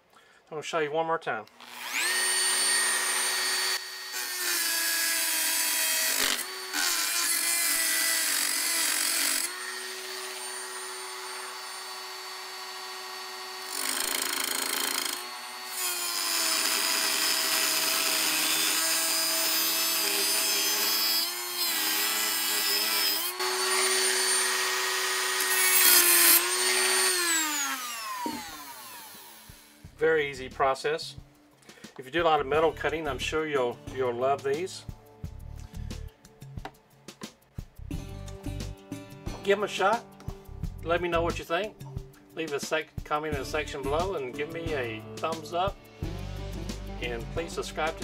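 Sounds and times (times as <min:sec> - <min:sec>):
motor winding down: 0:01.6 - 0:04.4, 0:08.0 - 0:29.8
rotary tool cutting metal: 0:01.6 - 0:29.8.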